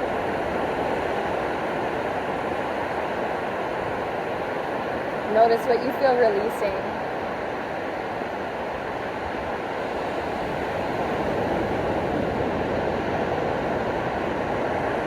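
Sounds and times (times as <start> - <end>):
ocean waves breaking on beach: 0.0 - 15.0.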